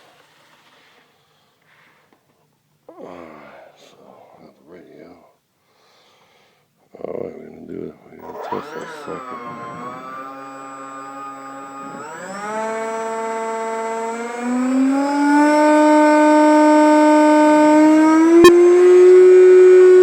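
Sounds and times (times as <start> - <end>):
electric fan motor whining: 8.2 - 20.0.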